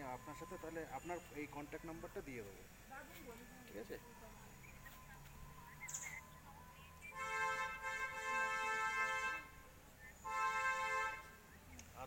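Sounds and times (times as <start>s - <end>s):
horn-like chord blasts: 7.2s - 9.6s.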